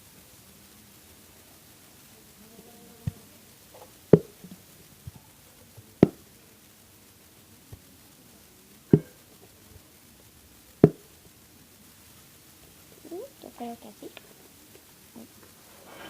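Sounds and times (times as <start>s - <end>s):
glue bottle knocking on bowl: 8.9s - 9.2s.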